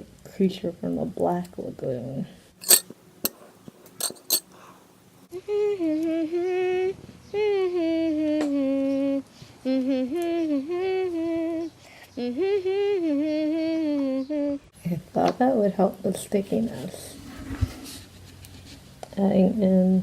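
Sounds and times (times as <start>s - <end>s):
breaths: 4.5s - 5.0s, 9.2s - 9.6s, 11.8s - 12.2s
woman humming: 5.4s - 14.6s.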